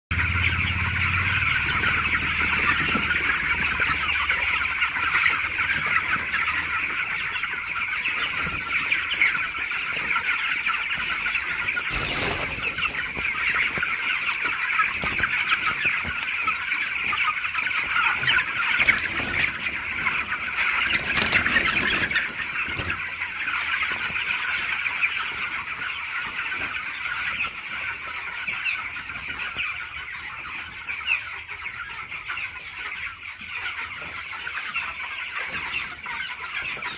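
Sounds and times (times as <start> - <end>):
chicks peeping and clucking: 0.1 - 36.9.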